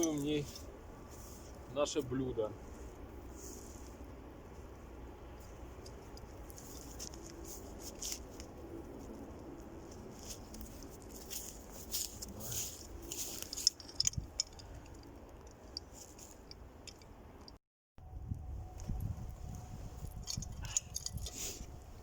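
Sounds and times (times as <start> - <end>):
snow crunching and scraping: 6.4 - 13.6.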